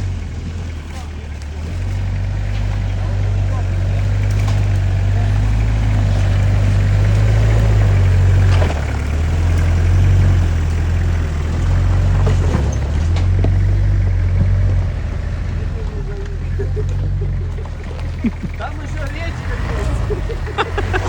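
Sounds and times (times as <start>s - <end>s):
vehicle engines labouring: 0.0s - 21.0s
short knocks and rattles: 11.5s - 18.6s.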